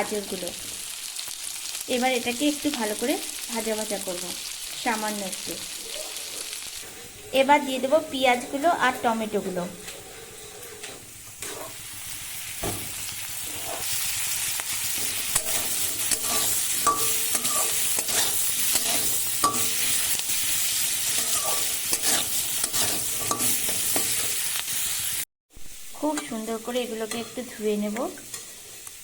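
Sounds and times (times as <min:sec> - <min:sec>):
vegetables sizzling in hot oil: 0:00.0 - 0:29.0
spatula scraping metal pan: 0:06.8 - 0:11.9, 0:13.4 - 0:14.1, 0:14.9 - 0:24.4, 0:28.2 - 0:28.9.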